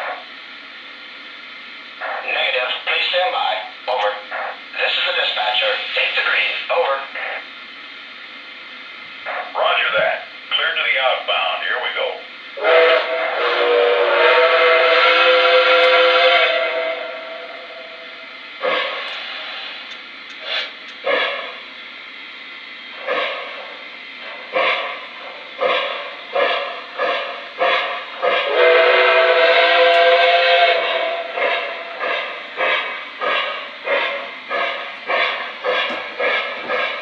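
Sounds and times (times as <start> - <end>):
steam locomotive chuffing: 0.0 - 37.0
steam whistle blast: 12.6 - 19.1, 25.6 - 32.9.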